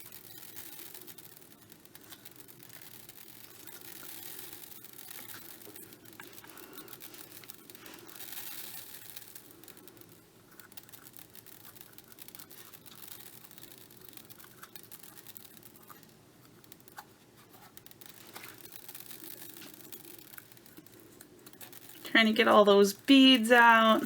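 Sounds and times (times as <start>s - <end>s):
beads clicking: 0.0s - 24.0s
faint scratching: 0.0s - 24.0s.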